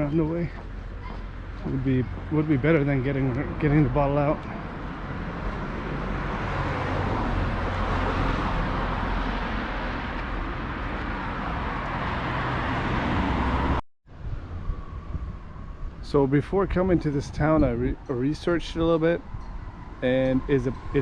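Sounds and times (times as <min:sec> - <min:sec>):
cars passing: 0:00.0 - 0:15.9.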